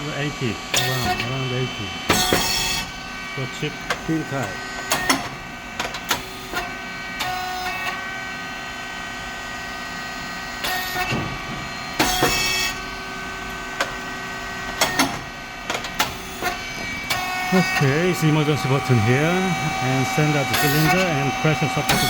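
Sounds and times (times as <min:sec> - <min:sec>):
machine hum: 0:00.0 - 0:22.0
machine clicks and knocks: 0:04.8 - 0:06.7, 0:14.7 - 0:17.2.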